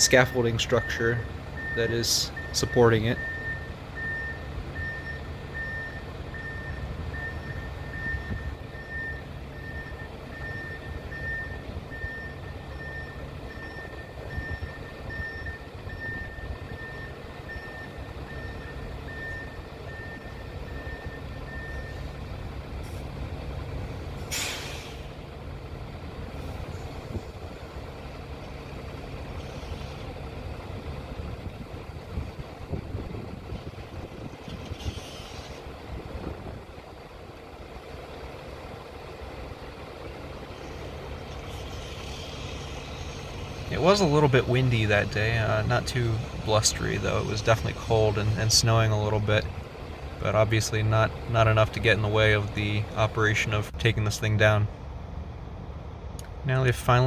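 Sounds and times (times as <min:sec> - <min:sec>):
diesel engine rumble: 0:00.0 - 0:57.0
backup alarm beeping: 0:00.7 - 0:22.1
loud hiss of air: 0:24.2 - 0:25.2, 0:34.8 - 0:35.6.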